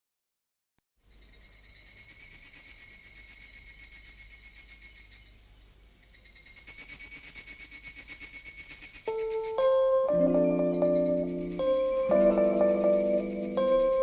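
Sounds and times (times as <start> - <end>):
shimmering jingling music: 9.1 - 14.0.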